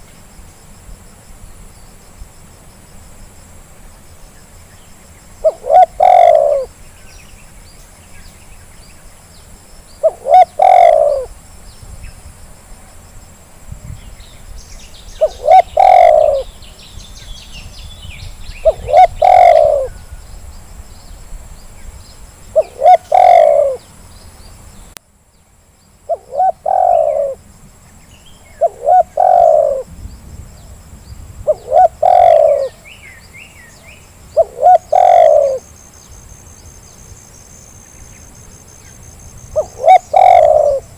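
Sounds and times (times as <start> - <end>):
small birds chirping: 4.1 - 12.2, 13.8 - 40.9
dove cooing: 5.4 - 6.8, 10.0 - 11.4, 15.2 - 16.5, 18.6 - 20.0, 22.5 - 23.9, 26.1 - 27.4, 28.6 - 29.9, 31.5 - 32.8, 34.3 - 35.7, 39.6 - 40.9.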